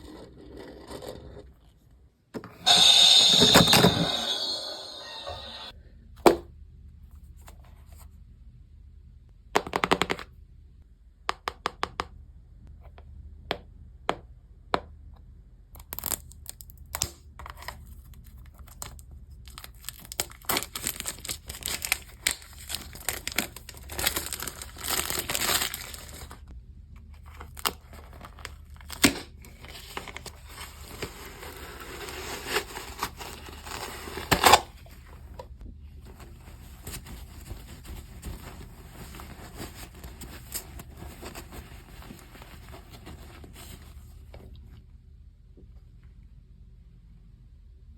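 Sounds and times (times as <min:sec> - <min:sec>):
plastic and paper crinkling: 0:17.4 - 0:26.4, 0:27.2 - 0:35.4, 0:36.0 - 0:44.2.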